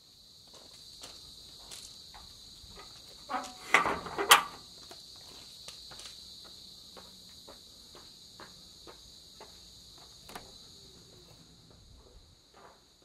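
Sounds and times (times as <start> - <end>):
insects trilling: 0.0 - 13.0.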